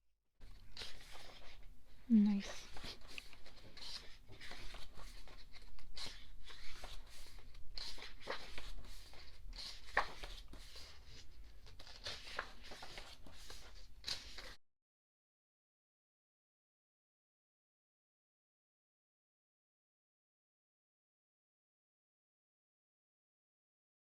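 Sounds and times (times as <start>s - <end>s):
book pages rustling: 0.4s - 14.6s.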